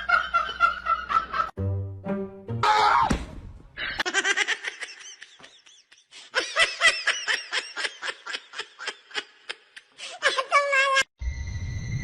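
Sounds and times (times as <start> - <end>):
high-pitched laughter: 4.0 - 11.1.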